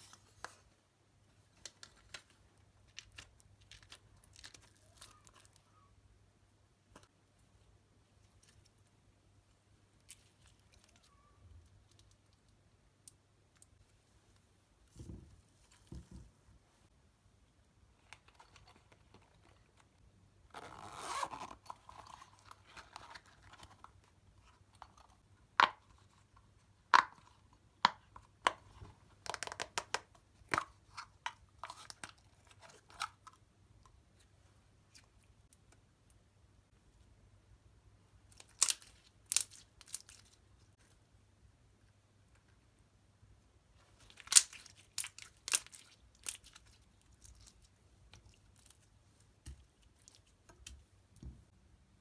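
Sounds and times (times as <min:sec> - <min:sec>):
slime crackling and crinkling: 0:43.9 - 0:49.0.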